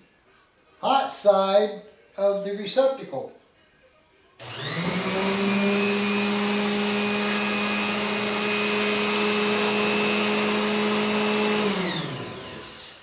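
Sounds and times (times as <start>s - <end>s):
gearmotor whining: 4.4s - 13.0s.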